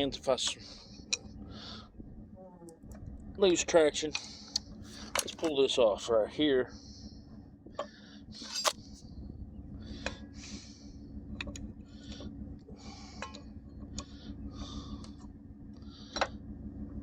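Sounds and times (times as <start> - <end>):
pickup engine idling: 0.0 - 17.0.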